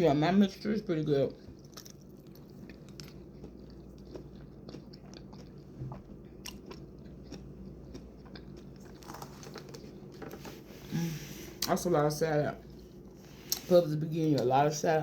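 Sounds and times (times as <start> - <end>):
chewing with crunches: 1.3 - 10.6.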